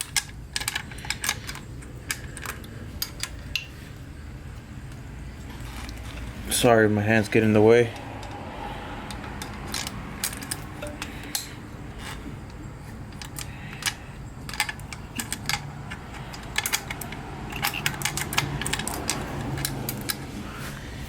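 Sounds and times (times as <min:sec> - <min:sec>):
metallic clicks of hand tools: 0:09.0 - 0:20.3.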